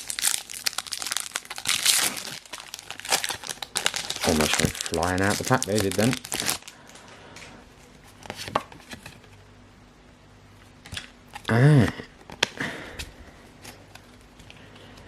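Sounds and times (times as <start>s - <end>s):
foil pack rustling: 0.0s - 7.1s
person humming: 11.5s - 12.1s.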